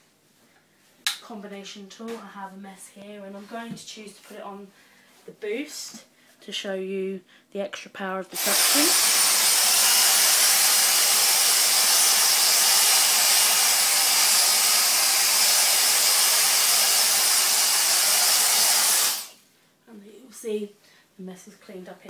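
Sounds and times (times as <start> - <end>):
handheld vacuum cleaner running: 8.4 - 19.4.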